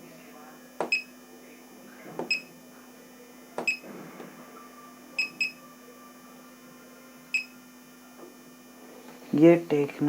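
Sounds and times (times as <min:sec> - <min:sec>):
faint steady hum: 0:00.0 - 0:10.0
high keypress beeps: 0:00.9 - 0:01.1, 0:02.3 - 0:02.5, 0:03.6 - 0:03.8, 0:05.2 - 0:05.6.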